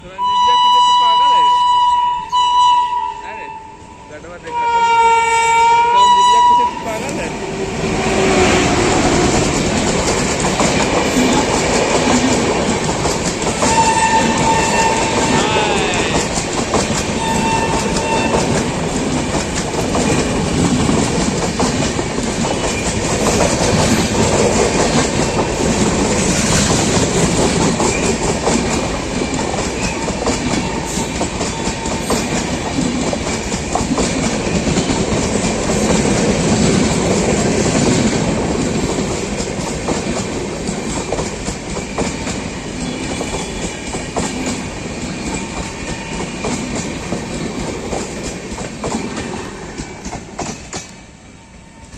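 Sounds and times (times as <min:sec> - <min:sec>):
locomotive horn: 0:00.2 - 0:07.0, 0:13.6 - 0:16.1, 0:17.2 - 0:18.6
train wheels clattering over rail joints: 0:07.0 - 0:15.4, 0:16.0 - 0:51.1.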